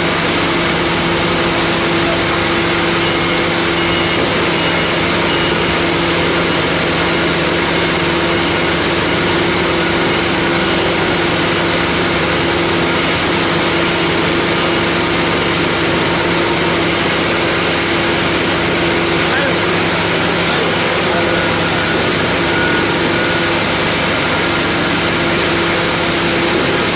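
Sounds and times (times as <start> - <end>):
motor humming steadily: 0.0 - 26.9.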